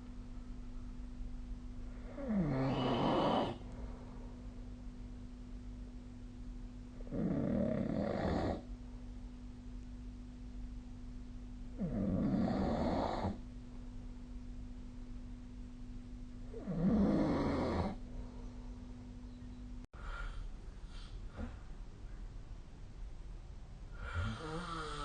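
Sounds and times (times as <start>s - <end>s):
steady low hum: 0.0s - 25.0s
person snoring: 2.0s - 3.6s, 7.0s - 8.7s, 11.8s - 13.4s, 16.5s - 18.0s, 24.0s - 25.0s.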